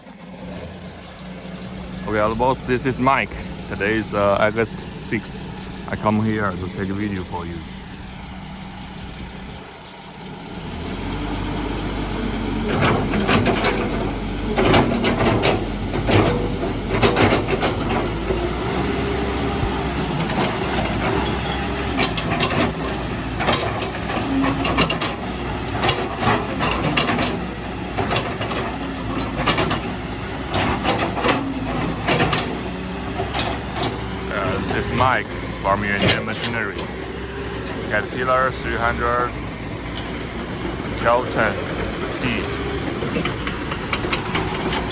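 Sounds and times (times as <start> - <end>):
excavator diesel engine running: 0.0 - 44.9
sharp metal clanks and knocks: 12.7 - 18.4, 20.1 - 37.0.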